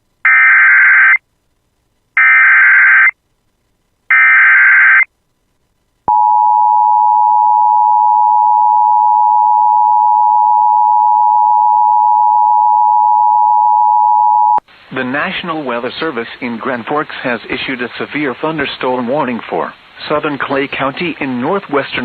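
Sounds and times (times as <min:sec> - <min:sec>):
screeching digital data tones: 0:02.2 - 0:03.2, 0:04.1 - 0:05.1.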